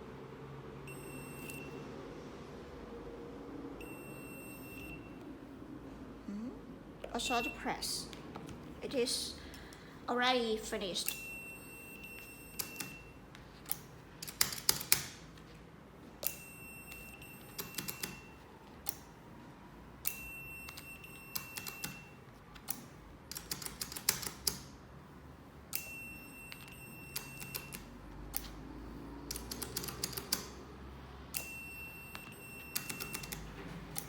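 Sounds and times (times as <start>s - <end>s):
intercom high beeps: 7.2s - 7.8s.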